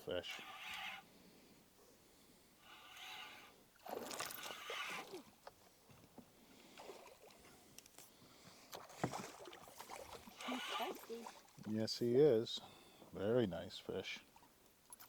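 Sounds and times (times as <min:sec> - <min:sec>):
water splashing and sloshing: 0:03.1 - 0:12.0.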